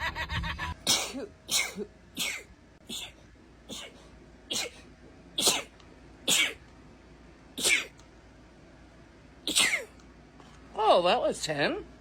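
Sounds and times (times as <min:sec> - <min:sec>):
woman sneezing: 0:00.8 - 0:04.8, 0:06.3 - 0:06.6, 0:07.6 - 0:07.9, 0:09.5 - 0:09.9.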